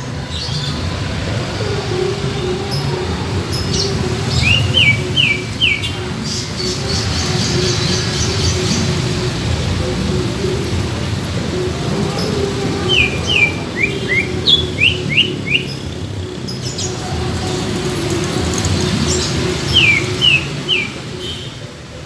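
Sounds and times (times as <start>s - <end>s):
bird whistling calls: 12.8s - 15.9s, 19.1s - 21.6s.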